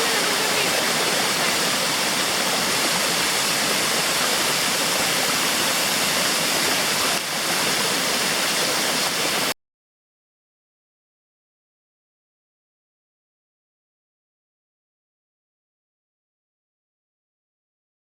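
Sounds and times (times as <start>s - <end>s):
river and waterfall rushing: 0.0s - 9.5s.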